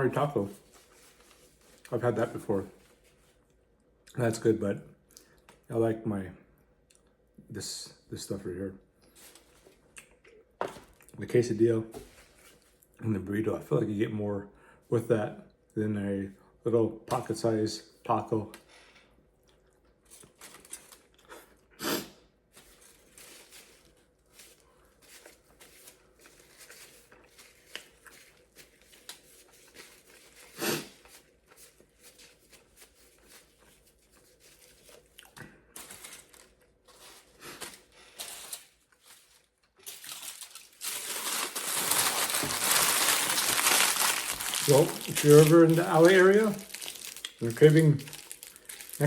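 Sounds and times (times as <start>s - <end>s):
food wrapper crinkling and tearing: 20.0s - 21.6s, 22.5s - 49.0s.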